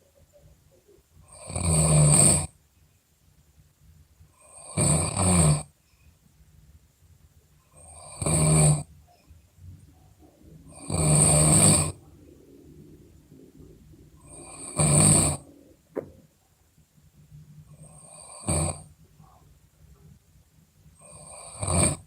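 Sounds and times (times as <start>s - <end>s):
loud snoring: 1.3s - 2.5s, 4.4s - 5.7s, 7.8s - 8.9s, 10.6s - 15.8s, 17.7s - 18.9s, 21.0s - 22.0s
quiet breathing: 5.6s - 6.7s, 7.4s - 22.0s.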